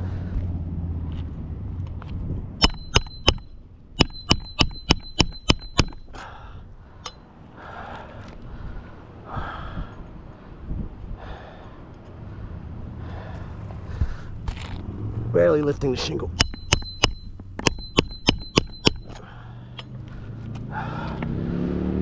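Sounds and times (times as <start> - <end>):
hammer striking metal tool: 2.6 - 6.1, 16.3 - 19.2.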